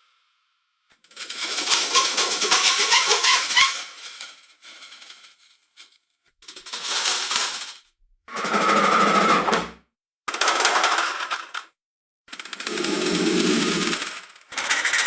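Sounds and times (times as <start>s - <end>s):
steady whine: 12.6s - 14.1s.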